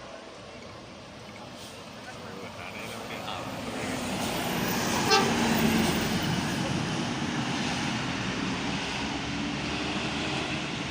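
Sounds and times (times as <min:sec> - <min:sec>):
bus passing: 0:00.0 - 0:10.9
bus horn toot: 0:05.0 - 0:05.5.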